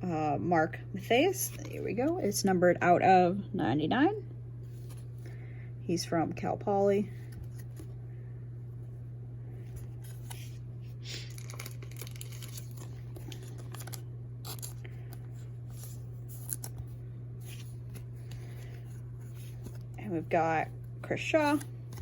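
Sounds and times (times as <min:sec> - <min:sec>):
steady low hum: 0:00.0 - 0:22.0
foil wrapper crinkling: 0:10.0 - 0:16.9.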